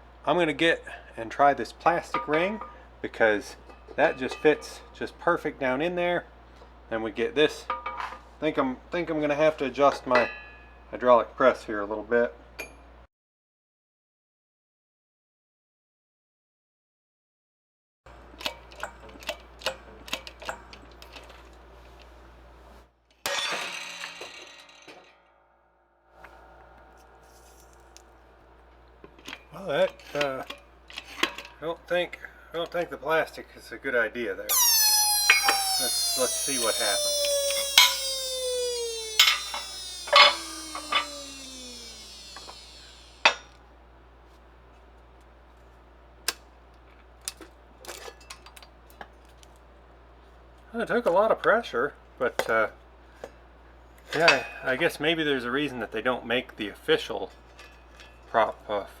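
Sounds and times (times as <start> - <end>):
high squealing creak: 34.5 - 43.0
loud snap: 34.5 - 43.3
loud ringing crack: 34.5 - 43.4
low steady hum: 34.5 - 43.4.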